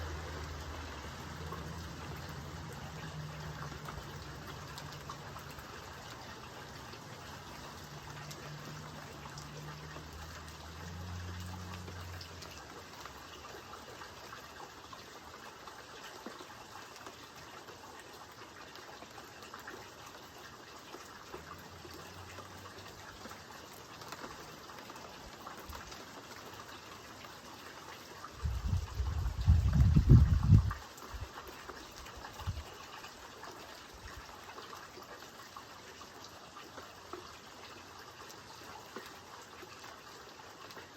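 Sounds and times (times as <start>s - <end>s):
rain falling: 0.0s - 40.9s.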